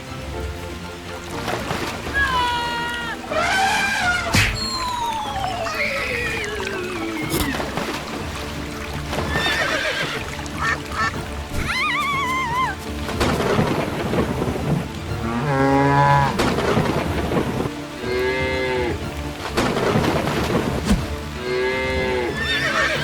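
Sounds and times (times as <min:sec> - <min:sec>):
heavy rain: 0:00.0 - 0:15.3.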